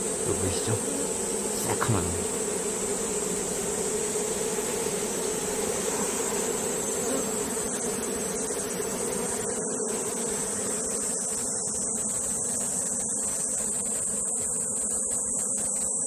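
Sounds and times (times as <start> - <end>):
high-pitched hiss: 0.0 - 2.3
honeybees buzzing: 0.0 - 16.0.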